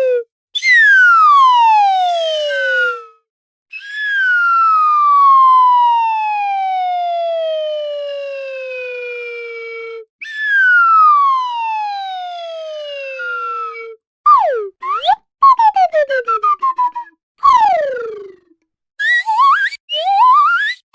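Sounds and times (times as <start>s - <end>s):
slide whistle sliding downward: 0.6s - 3.1s.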